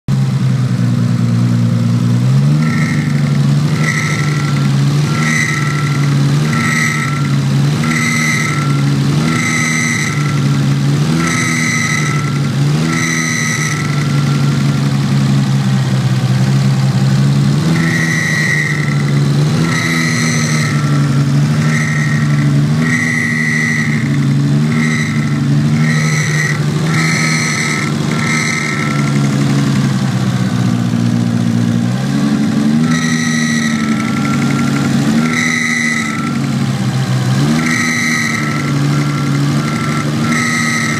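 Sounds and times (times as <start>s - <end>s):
car engine running: 0.1s - 40.9s
high-pitched whistling squeal: 2.4s - 15.2s, 17.6s - 29.8s, 32.4s - 36.8s, 37.4s - 40.9s.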